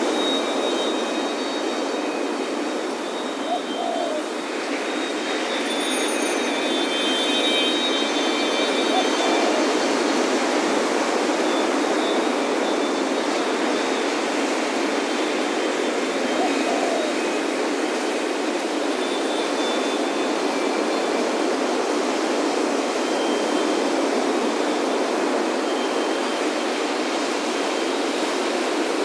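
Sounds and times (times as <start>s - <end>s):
wind chimes ringing: 0.0s - 14.0s
ocean surf: 0.0s - 29.0s.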